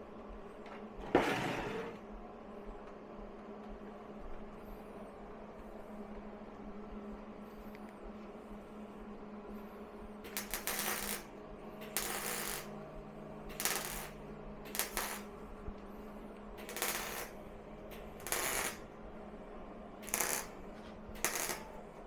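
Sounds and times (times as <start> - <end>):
low hum: 0.0 - 22.0
welding arc crackling: 10.3 - 12.8, 13.5 - 15.4, 16.5 - 19.0, 20.0 - 22.0.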